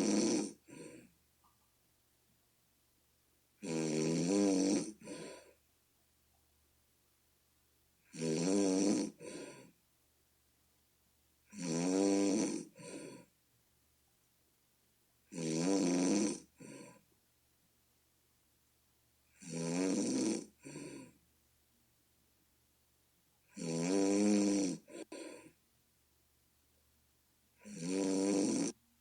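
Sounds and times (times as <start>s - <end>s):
person snoring: 0.0s - 1.1s, 3.6s - 5.6s, 8.0s - 9.7s, 11.5s - 13.3s, 15.3s - 17.0s, 19.3s - 21.2s, 23.5s - 25.6s, 27.6s - 28.8s.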